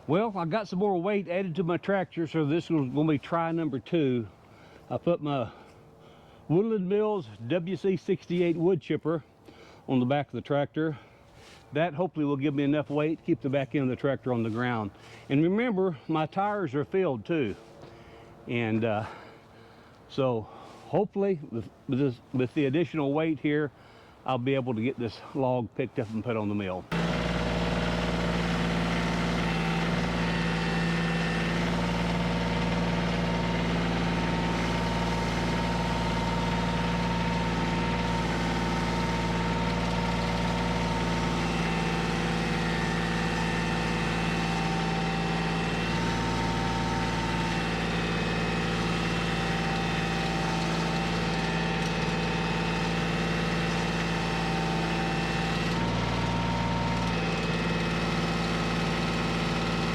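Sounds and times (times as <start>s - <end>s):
tractor diesel engine running: 0.0s - 6.5s, 26.1s - 59.9s.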